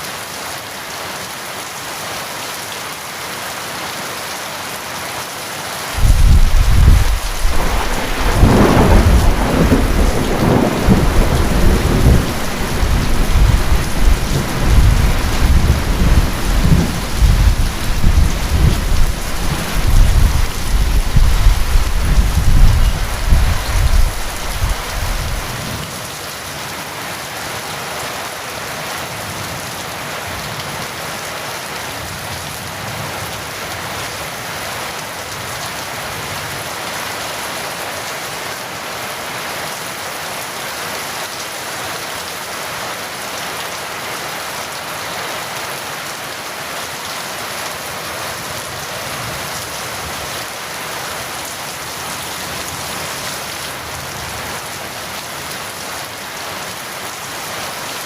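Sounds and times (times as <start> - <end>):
heavy rain: 0.0 - 58.0
thunder rolling: 6.0 - 25.7.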